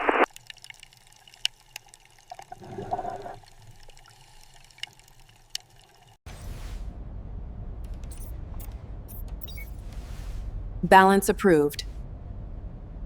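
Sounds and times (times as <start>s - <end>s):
small water clicks: 0.3s - 6.2s
water gurgling: 0.3s - 6.7s.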